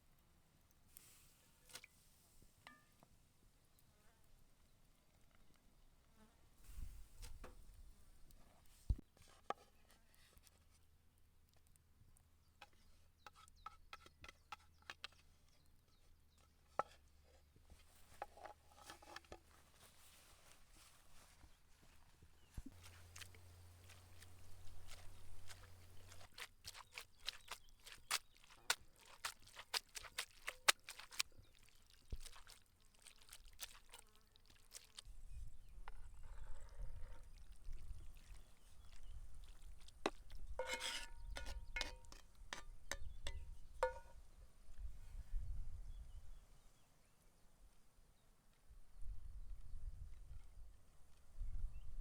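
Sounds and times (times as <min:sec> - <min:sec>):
cutlery tapping dishware: 0:43.0 - 0:44.2
wind rumble on microphone: 0:44.8 - 0:46.5, 0:48.9 - 0:52.0.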